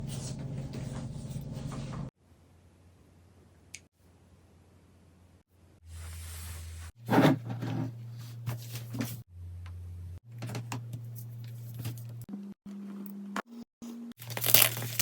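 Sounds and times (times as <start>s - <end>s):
packaging clicks and rustles: 14.2s - 15.0s.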